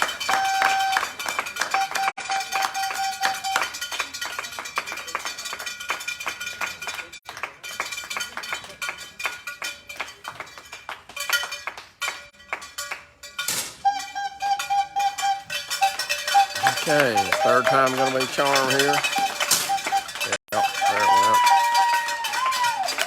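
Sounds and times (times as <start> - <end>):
background music with clicking beat: 13.8 - 22.6.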